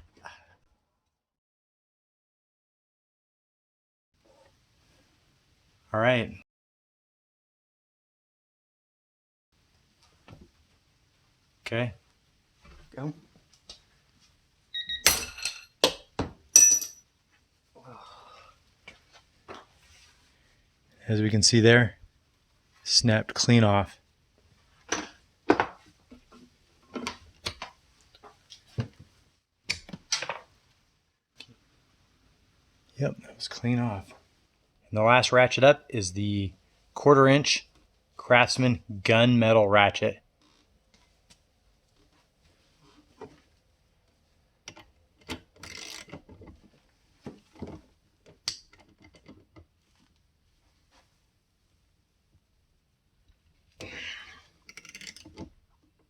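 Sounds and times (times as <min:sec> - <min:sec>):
metal tool parts knocking and clinking: 0:14.8 - 0:15.8, 0:16.6 - 0:17.0.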